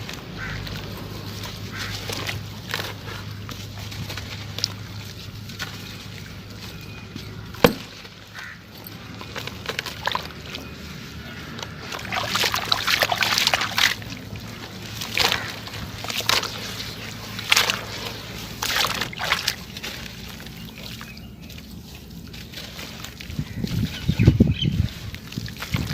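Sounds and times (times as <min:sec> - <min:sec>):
sand-cement chunks crunching: 0:00.0 - 0:25.9
sharp crack: 0:07.6 - 0:08.1.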